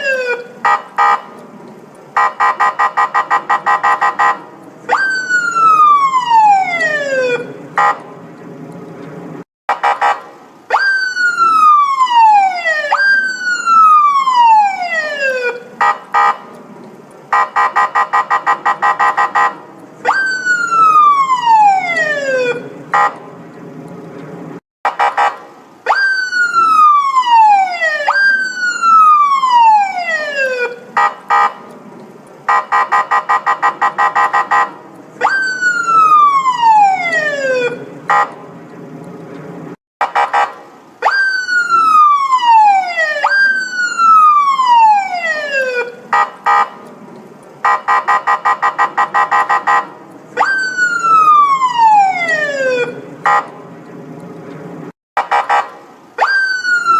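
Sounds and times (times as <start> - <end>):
police siren wailing: 0.0 - 1.4, 2.2 - 8.0, 9.7 - 16.6, 17.3 - 23.2, 24.9 - 31.7, 32.4 - 38.4, 40.0 - 46.9, 47.6 - 53.6, 55.2 - 56.9.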